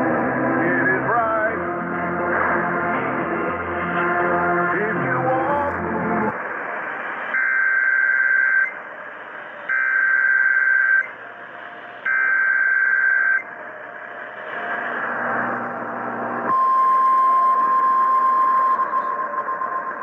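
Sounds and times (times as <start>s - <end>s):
radio hiss: 0.6s - 2.6s, 3.8s - 16.4s
warbling digital data tones: 16.5s - 20.0s.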